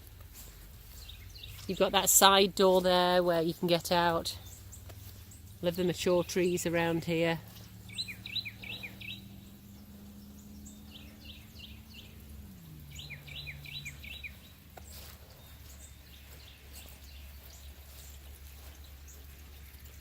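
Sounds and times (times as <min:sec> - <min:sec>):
songbird chirping: 0:00.0 - 0:20.0.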